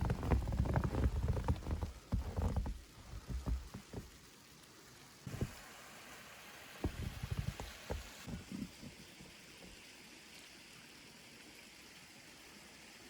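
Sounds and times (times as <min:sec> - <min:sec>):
wind rumble on microphone: 0:00.0 - 0:04.0, 0:06.8 - 0:08.8
footsteps crunching in snow: 0:00.0 - 0:04.1.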